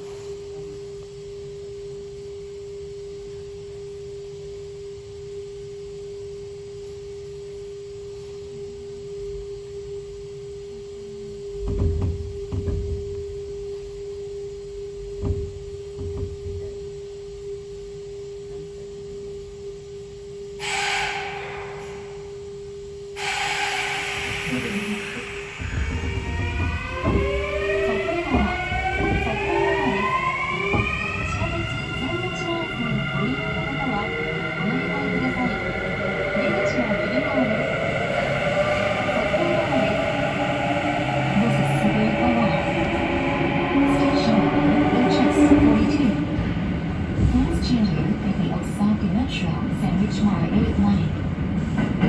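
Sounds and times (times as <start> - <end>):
electric train rumble: 8.9 - 52.0
steady pure tone: 11.1 - 50.9
long hissing bursts: 23.2 - 26.8.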